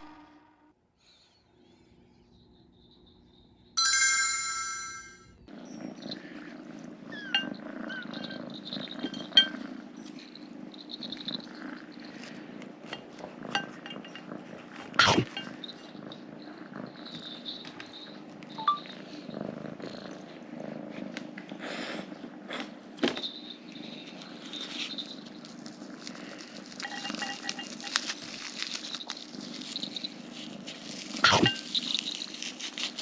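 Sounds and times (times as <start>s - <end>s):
bright chime ringing: 3.8s - 5.2s
kitten purring: 18.6s - 22.6s.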